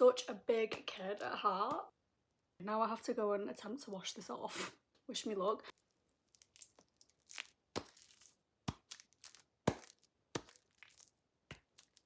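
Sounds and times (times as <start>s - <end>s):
sticky toy crackling and snapping: 6.3s - 12.0s.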